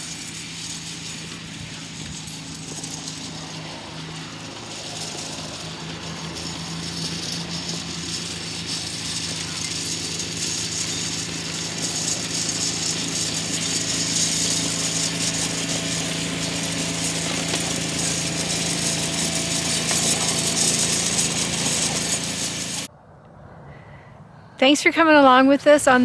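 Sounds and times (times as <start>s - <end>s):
seed spreader hiss and rattle: 0.0s - 22.9s
utility vehicle engine hum: 0.0s - 22.9s.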